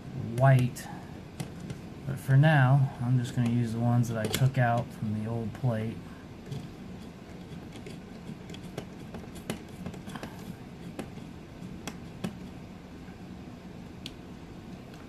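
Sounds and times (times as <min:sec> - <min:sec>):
faint steady hum: 0:00.0 - 0:15.0
screwdriver clicks and scrapes on metal: 0:04.2 - 0:04.8, 0:06.5 - 0:12.4.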